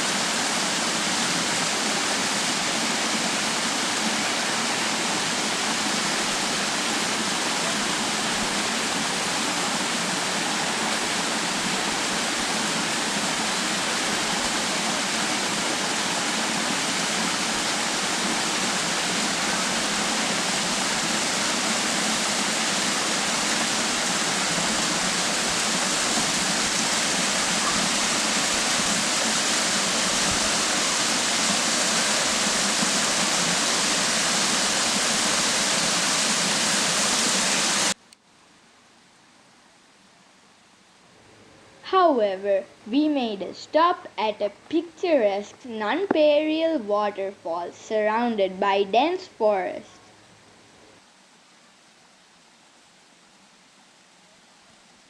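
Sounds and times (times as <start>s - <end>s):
waterfall rushing: 0.0s - 38.0s.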